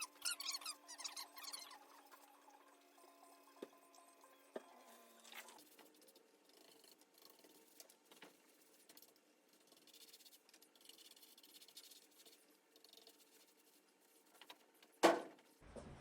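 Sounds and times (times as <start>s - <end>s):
brush scratching on wood: 5.2s - 14.8s.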